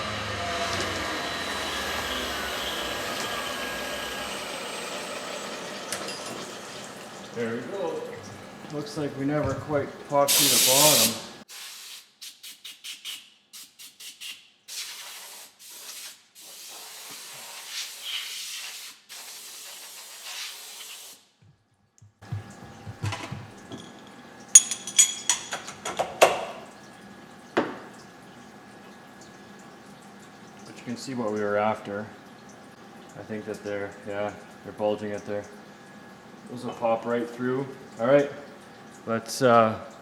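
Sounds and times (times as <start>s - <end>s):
machine hum: 0.0s - 10.3s
coolant spraying hisses: 6.6s - 11.8s.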